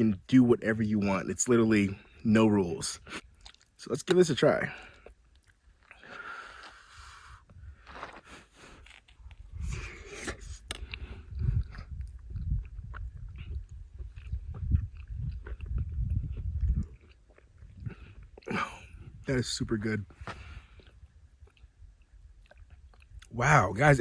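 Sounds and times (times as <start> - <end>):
person chewing food: 3.0 - 3.8, 4.7 - 19.3, 20.1 - 23.4.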